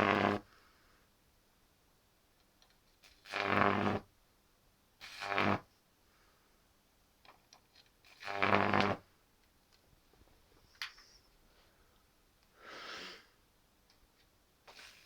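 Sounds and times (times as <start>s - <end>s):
electric arc buzzing: 3.0s - 4.0s, 5.0s - 5.6s, 8.0s - 9.0s, 14.7s - 15.0s.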